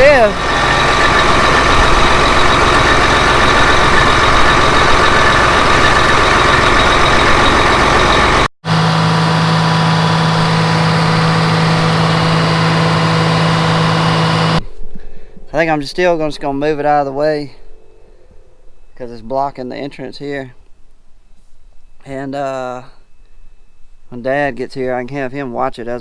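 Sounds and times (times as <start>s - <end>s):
tractor diesel engine running: 0.0s - 20.6s.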